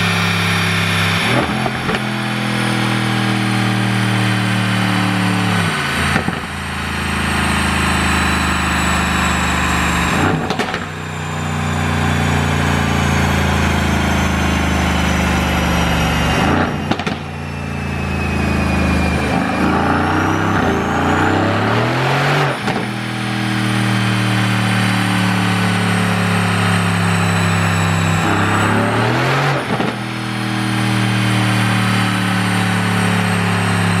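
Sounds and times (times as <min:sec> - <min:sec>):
car engine revving: 0:00.0 - 0:34.0
exhaust pops and bangs: 0:06.1 - 0:06.6, 0:10.2 - 0:11.0, 0:16.6 - 0:17.4, 0:22.6 - 0:22.9, 0:29.7 - 0:30.0.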